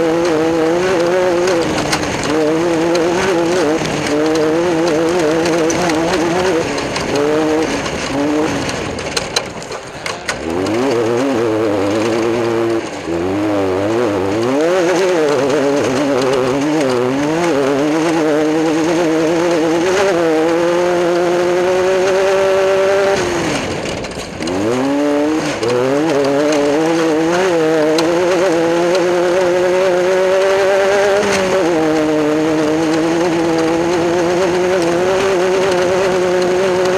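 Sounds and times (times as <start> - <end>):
race car engine revving: 0.0 - 36.9.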